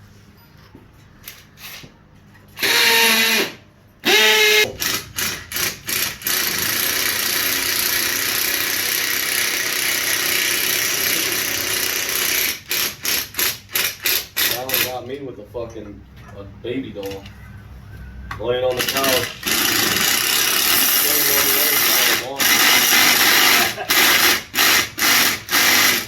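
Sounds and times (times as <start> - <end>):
cordless power drill whining: 2.6 - 12.5, 18.8 - 26.0.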